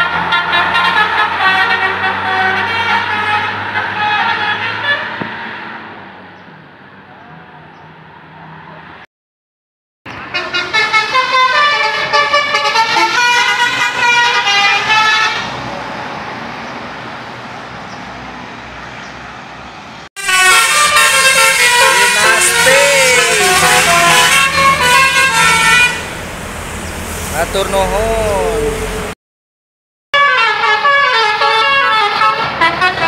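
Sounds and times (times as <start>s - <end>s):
bus horn playing tune: 0.0s - 5.2s, 10.2s - 15.5s, 20.2s - 26.4s, 30.2s - 33.0s
road noise: 0.0s - 9.1s, 10.0s - 29.2s, 30.2s - 33.0s.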